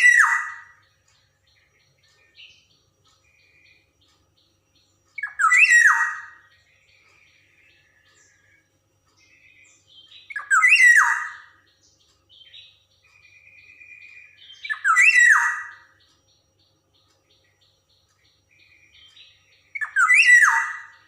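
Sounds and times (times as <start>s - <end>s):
bird chattering calls: 5.2s - 6.5s, 13.2s - 16.0s, 19.8s - 21.0s.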